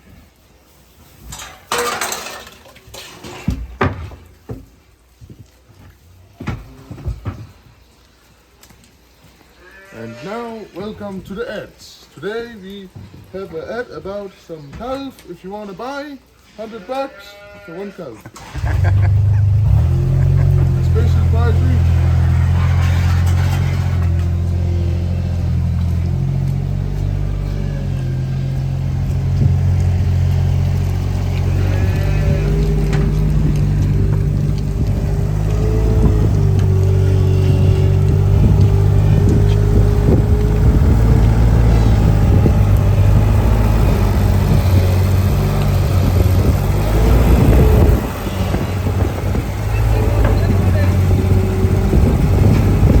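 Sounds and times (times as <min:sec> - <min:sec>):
engine low drone: 0:18.4 - 0:53.0.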